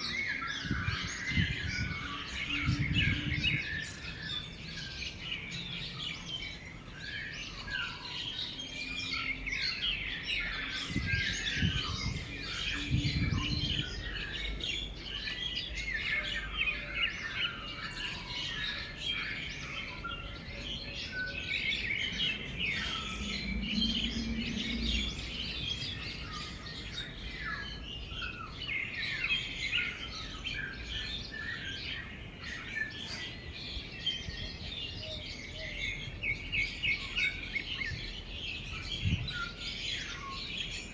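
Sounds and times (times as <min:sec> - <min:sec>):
small birds chirping: 0:00.0 - 0:40.9.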